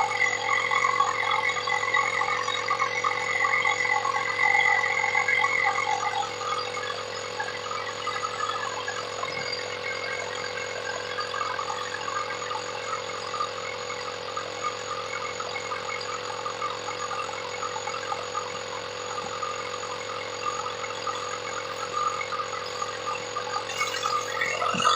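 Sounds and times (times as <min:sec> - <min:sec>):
electric tire inflator running: 0:00.0 - 0:24.9.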